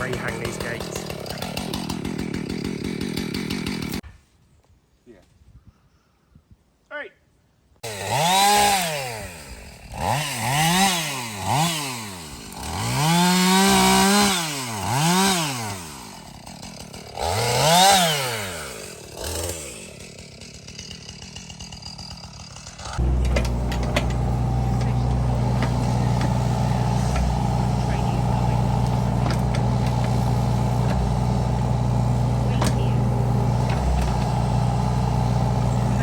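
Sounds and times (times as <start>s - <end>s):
chainsaw revving: 0.0s - 4.0s, 7.8s - 36.0s
steady low engine: 22.9s - 36.0s.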